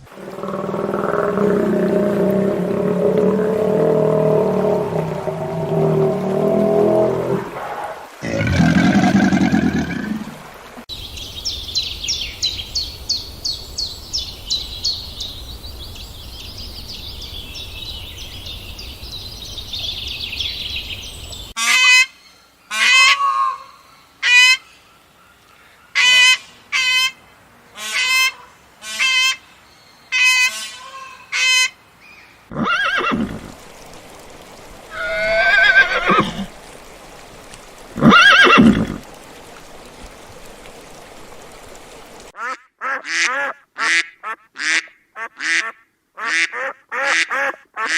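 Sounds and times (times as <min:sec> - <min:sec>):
longer animal calls: 0:00.1 - 0:10.3, 0:34.9 - 0:36.6.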